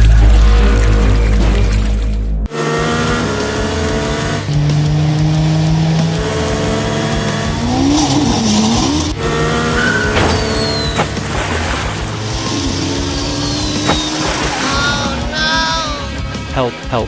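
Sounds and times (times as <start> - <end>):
car engine: 0.0 - 16.3
tyres squealing: 7.3 - 16.1.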